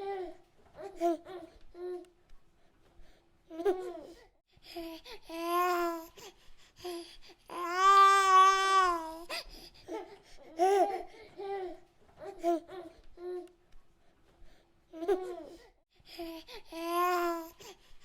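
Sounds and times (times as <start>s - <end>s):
baby crying and babbling: 4.8s - 6.2s, 6.9s - 13.5s, 16.2s - 17.8s.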